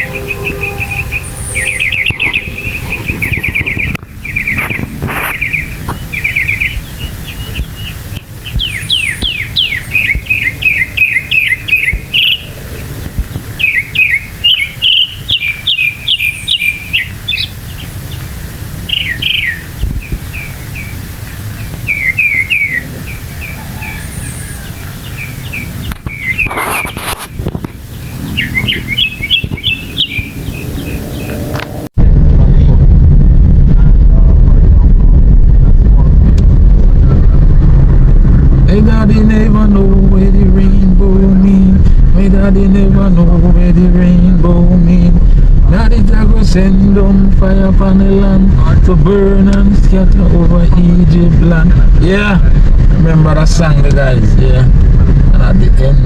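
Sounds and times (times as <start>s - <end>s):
mockingbird singing: 0.0s - 31.6s
steady low rumble: 0.0s - 56.0s.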